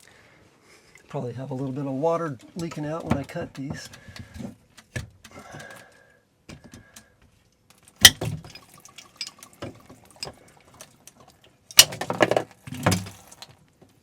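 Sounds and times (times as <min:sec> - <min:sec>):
pipe snapping: 0:08.0 - 0:08.6
water dribbling and dripping: 0:08.0 - 0:11.6.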